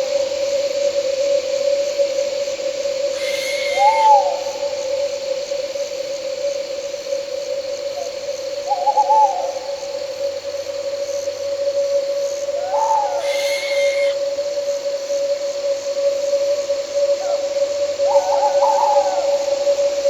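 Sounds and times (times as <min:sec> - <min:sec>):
night insects chirring: 0:00.0 - 0:20.0
owl hooting: 0:03.1 - 0:05.0, 0:08.7 - 0:09.9, 0:12.4 - 0:14.5, 0:18.0 - 0:19.5.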